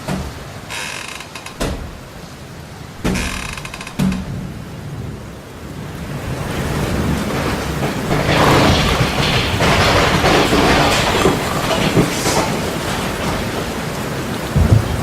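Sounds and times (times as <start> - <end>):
heavy rain: 0.0 - 15.0
rolling thunder: 6.1 - 15.0.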